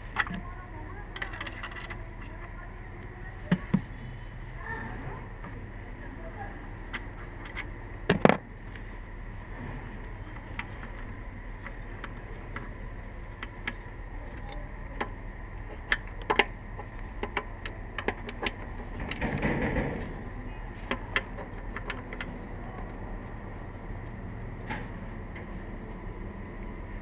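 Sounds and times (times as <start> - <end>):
tools clicking and knocking: 1.1 - 2.4, 13.3 - 20.2, 20.8 - 23.0
loud clatter: 18.8 - 20.2.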